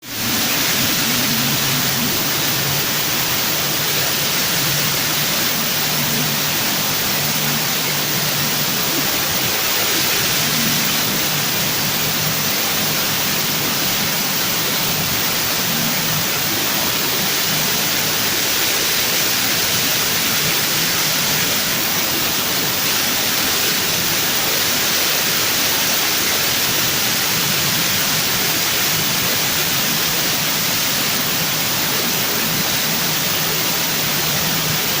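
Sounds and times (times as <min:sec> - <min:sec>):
loud steady hiss: 0:00.0 - 0:35.0.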